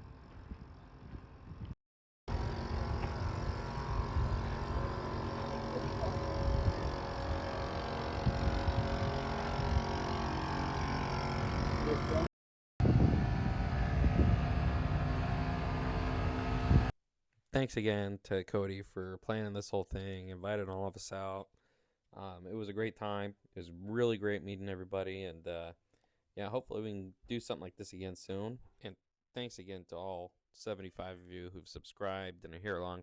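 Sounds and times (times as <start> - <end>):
vehicle engine hum: 2.3 - 12.3, 12.9 - 16.9
road noise: 13.0 - 16.9.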